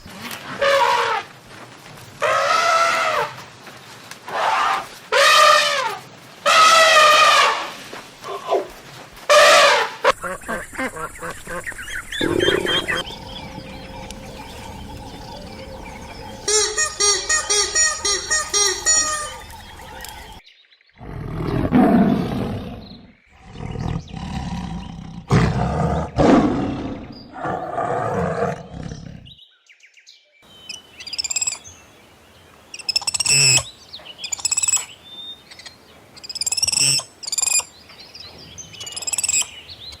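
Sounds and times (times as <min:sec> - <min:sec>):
bird chirping calls: 0:10.1 - 0:20.8, 0:28.6 - 0:31.9, 0:32.7 - 0:40.0
animal roaring: 0:12.2 - 0:16.6, 0:21.0 - 0:29.3.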